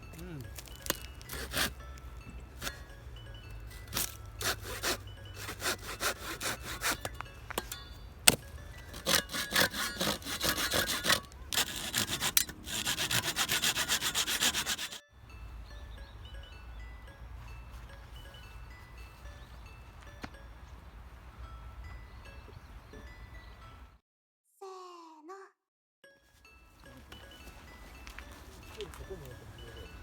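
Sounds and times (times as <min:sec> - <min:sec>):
hand saw cutting wood: 0:00.8 - 0:01.9, 0:02.6 - 0:02.8, 0:03.9 - 0:15.0.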